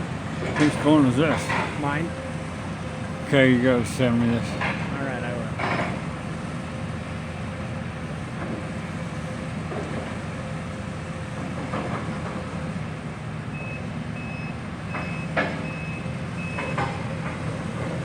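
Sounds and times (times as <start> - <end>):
heavy demolition machinery running: 0.0 - 18.0
backup alarm beeping: 13.6 - 16.8.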